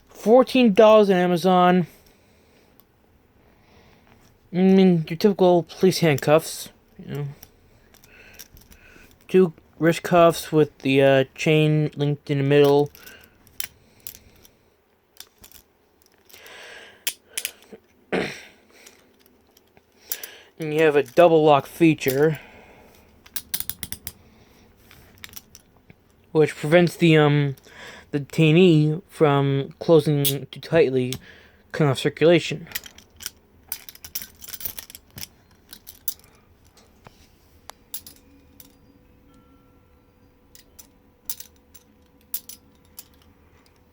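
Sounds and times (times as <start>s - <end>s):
faint steady hum: 0.0s - 43.9s
handcuffs clicking and clinking: 5.7s - 9.4s, 11.8s - 14.6s, 15.2s - 17.9s, 18.8s - 22.4s, 23.2s - 24.2s, 24.9s - 26.2s, 30.2s - 31.2s, 32.6s - 36.9s, 37.6s - 39.5s, 40.4s - 43.9s
metallic handcuff clicks: 23.2s - 24.2s, 40.5s - 43.8s.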